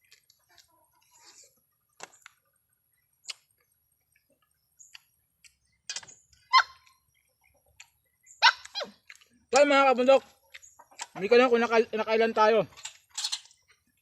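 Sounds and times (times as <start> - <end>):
chewing crunchy crab shells: 8.6 - 9.6.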